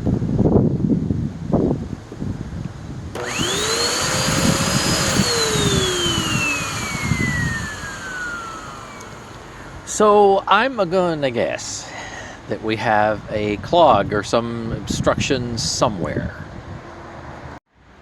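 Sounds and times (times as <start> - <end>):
vacuum motor whine: 3.1 - 9.9.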